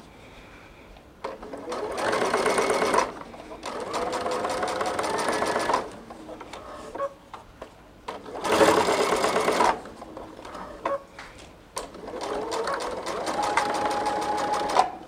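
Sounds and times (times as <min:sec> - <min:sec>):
sewing machine stitching fabric: 0:01.2 - 0:06.0, 0:08.1 - 0:11.0, 0:11.8 - 0:15.0.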